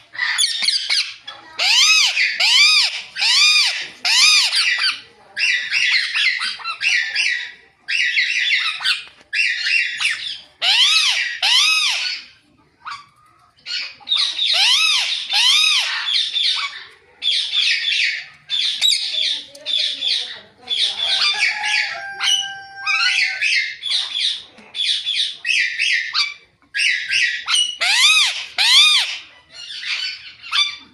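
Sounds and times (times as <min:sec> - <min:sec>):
raspy parakeet chatter: 0:00.0 - 0:22.4
parakeets squawking: 0:00.0 - 0:30.9.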